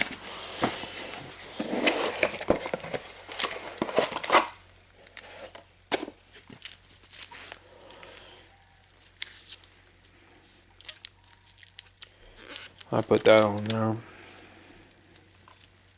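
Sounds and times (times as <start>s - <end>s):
packaging rustling: 0.0s - 5.5s.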